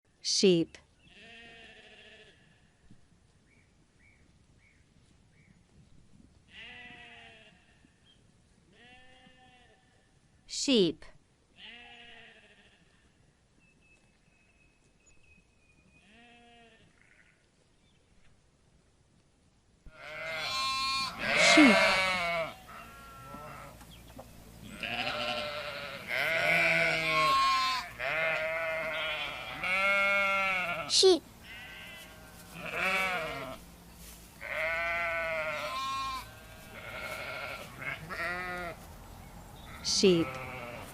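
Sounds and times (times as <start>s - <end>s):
sheep bleating: 1.1s - 2.7s, 6.5s - 7.8s, 8.8s - 9.9s, 11.6s - 13.0s, 16.0s - 17.4s, 19.9s - 23.8s, 24.6s - 33.6s, 34.4s - 38.8s, 39.7s - 40.9s.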